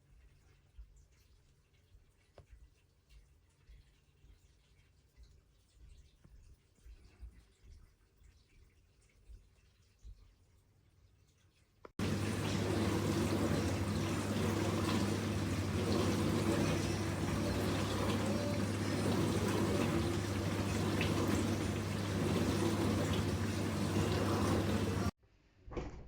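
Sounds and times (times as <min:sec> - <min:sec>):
dishwasher pump hum: 0:12.0 - 0:25.1
water spraying in dishwasher: 0:12.0 - 0:25.1.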